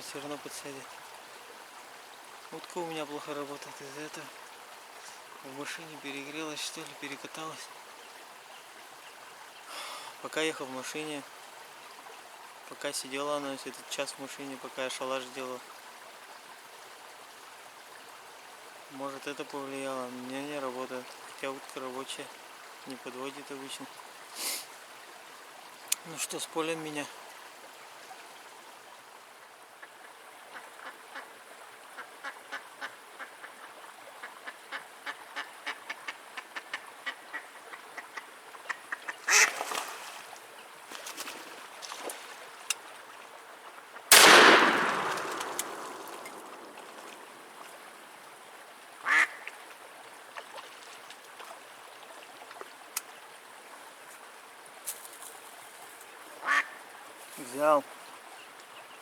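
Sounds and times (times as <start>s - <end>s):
duck quacking: 38.7s - 39.5s, 56.4s - 56.8s
shotgun shot: 44.1s - 47.2s.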